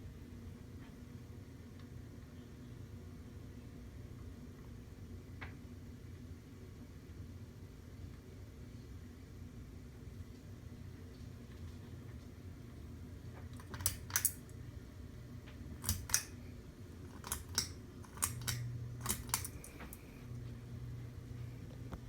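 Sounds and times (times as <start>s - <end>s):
ceiling fan motor humming: 0.0s - 22.0s
sharp clicks: 13.6s - 14.4s, 15.8s - 16.4s, 17.1s - 20.0s.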